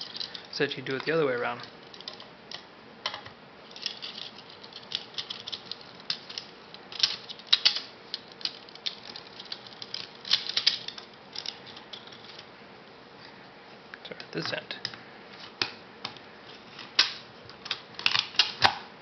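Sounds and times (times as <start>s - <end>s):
magazine parts clicking and rattling: 3.7s - 12.5s, 16.9s - 18.8s.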